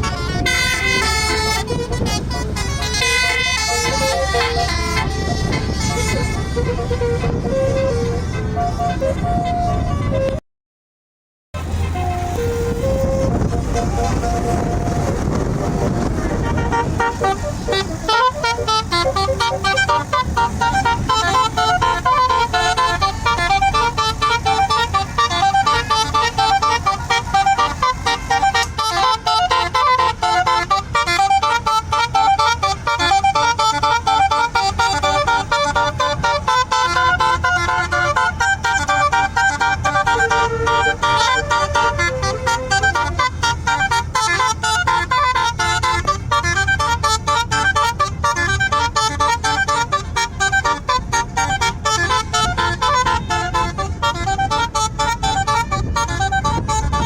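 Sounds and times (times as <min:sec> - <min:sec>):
steady low rumble: 0:00.0 - 0:10.0, 0:11.7 - 0:57.0
bus musical air horn: 0:00.0 - 0:10.4, 0:11.6 - 0:57.0.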